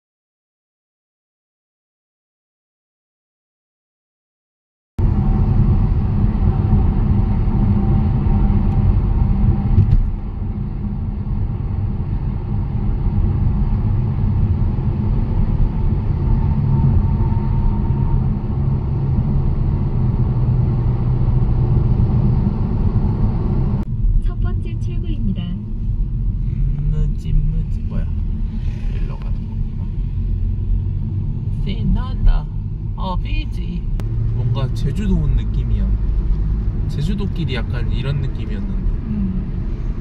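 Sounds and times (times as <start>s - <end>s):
car driving on road: 5.0s - 40.0s.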